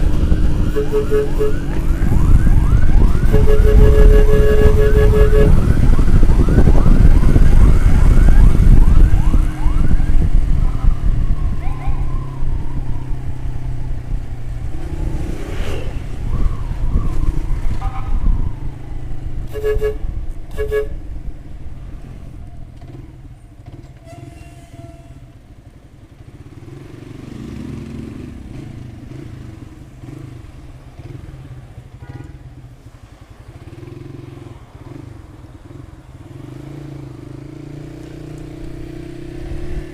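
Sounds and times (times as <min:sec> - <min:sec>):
traffic: 0:00.0 - 0:39.9
short horn beeps: 0:00.8 - 0:01.6, 0:03.3 - 0:05.6.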